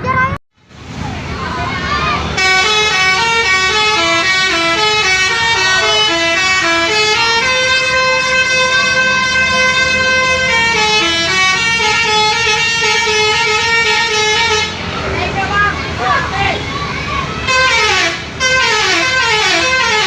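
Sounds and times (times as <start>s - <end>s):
bus horn playing a melody: 2.3s - 14.9s, 17.5s - 20.0s.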